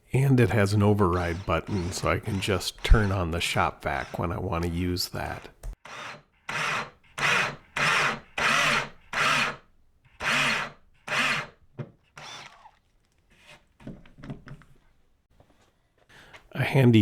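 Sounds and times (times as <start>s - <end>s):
power drill boring through board: 0.8s - 9.6s, 10.2s - 11.6s, 12.2s - 12.8s.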